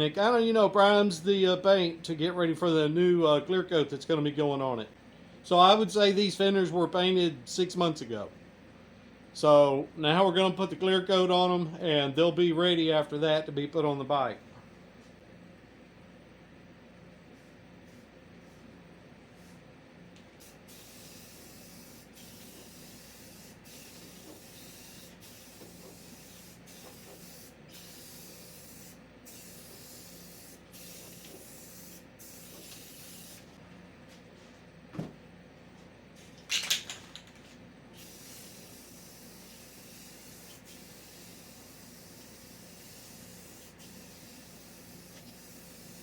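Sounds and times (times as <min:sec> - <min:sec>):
spray paint hissing: 0:20.4 - 0:33.5, 0:38.0 - 0:46.0.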